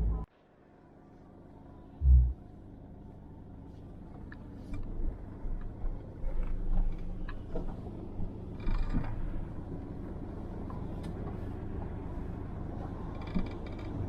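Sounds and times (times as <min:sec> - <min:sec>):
vehicle engine humming: 0:00.0 - 0:00.3, 0:01.1 - 0:14.0.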